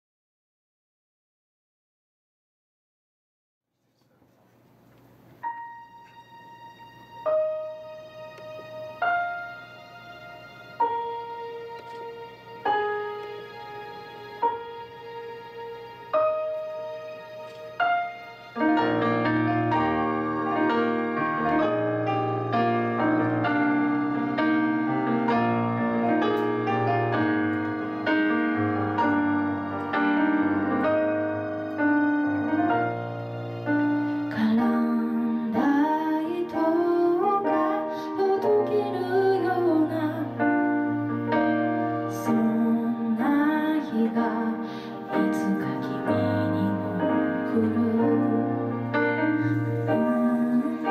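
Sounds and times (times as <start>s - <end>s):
piano chords: 5.1s - 50.9s
woman singing: 34.3s - 40.6s, 42.1s - 48.7s, 49.4s - 50.9s.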